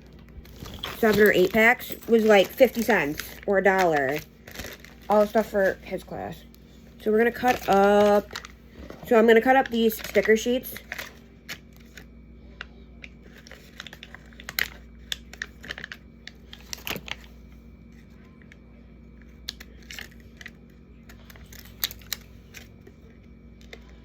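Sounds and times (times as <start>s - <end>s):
faint hum: 0.0s - 24.0s
paper crinkling: 0.3s - 12.1s, 13.0s - 18.5s.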